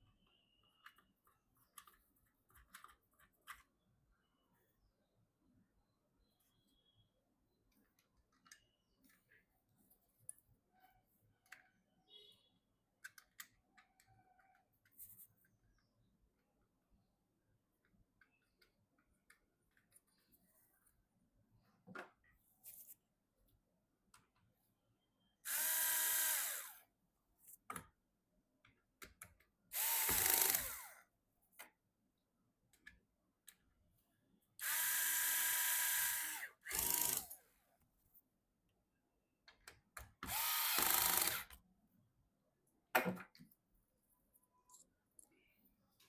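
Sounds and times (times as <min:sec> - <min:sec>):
electric screwdriver motor whine: 0:25.5 - 0:26.8, 0:29.8 - 0:30.9, 0:34.6 - 0:37.3, 0:40.3 - 0:41.5.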